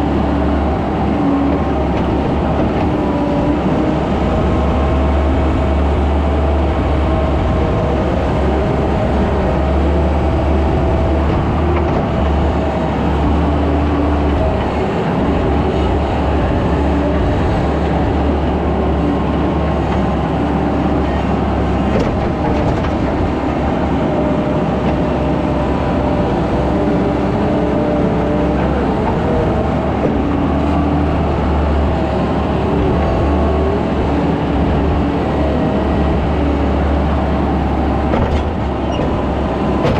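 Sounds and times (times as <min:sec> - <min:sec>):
skid steer engine running: 0:00.0 - 0:39.9.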